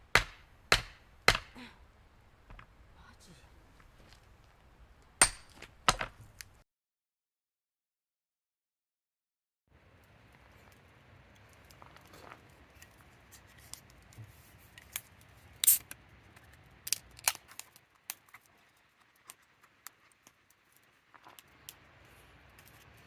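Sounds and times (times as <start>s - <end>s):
small objects clicking and tapping: 13.6s - 21.9s.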